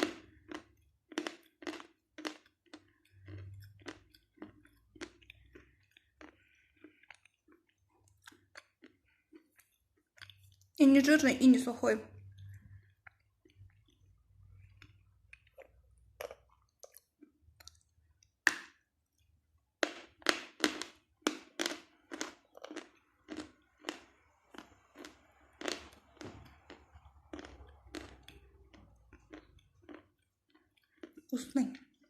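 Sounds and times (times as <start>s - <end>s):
crunchy chewing: 0.0s - 10.8s, 12.3s - 18.3s, 20.0s - 32.0s.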